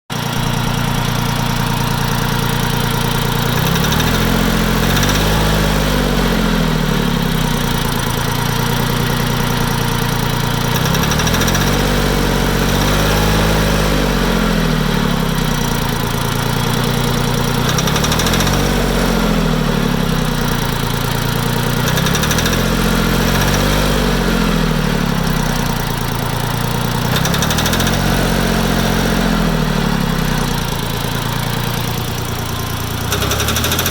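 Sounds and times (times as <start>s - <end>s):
diesel tractor engine knocking: 0.1s - 13.6s, 25.2s - 33.9s.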